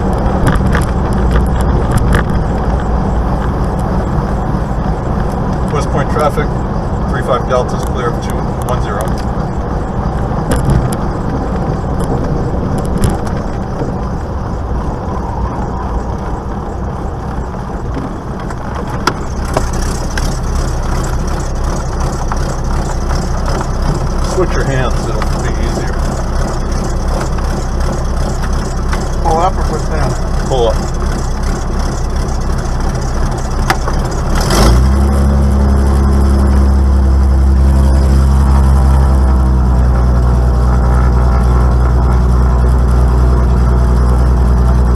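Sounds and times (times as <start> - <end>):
aircraft engine and propeller running: 0.0 - 44.9.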